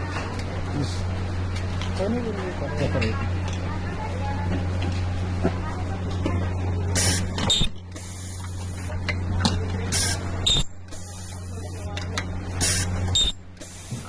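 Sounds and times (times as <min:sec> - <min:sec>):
steady electrical hum: 0:00.0 - 0:14.0
compressed air hissing bursts: 0:06.9 - 0:08.9, 0:09.9 - 0:11.9, 0:12.6 - 0:14.0.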